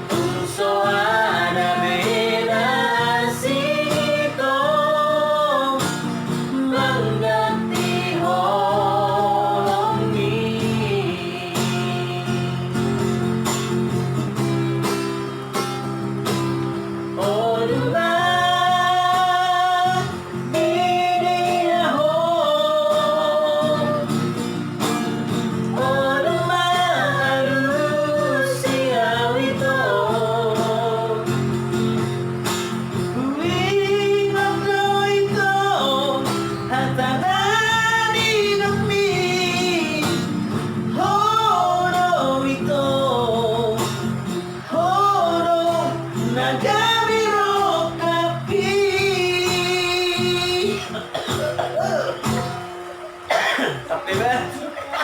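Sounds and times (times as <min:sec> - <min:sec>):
person singing: 0:00.0 - 0:13.1, 0:17.0 - 0:24.4, 0:25.7 - 0:31.5, 0:33.2 - 0:55.0
guitar accompaniment: 0:00.0 - 0:55.0.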